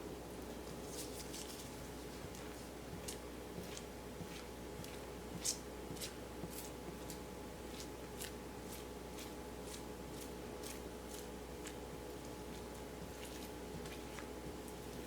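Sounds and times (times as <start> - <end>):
steady electrical hum: 0.0 - 15.0
scraper spreading chocolate on marble: 0.8 - 15.0.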